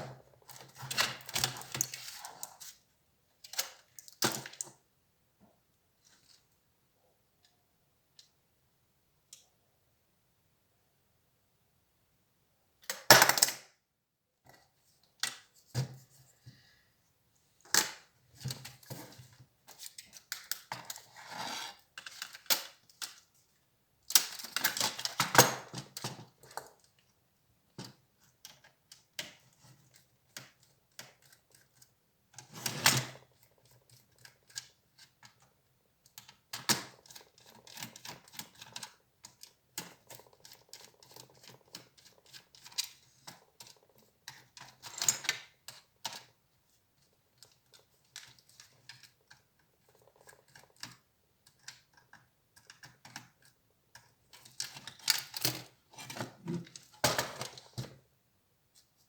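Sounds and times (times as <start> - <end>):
laptop parts clicking and rattling: 36.0 - 46.4, 47.0 - 58.0.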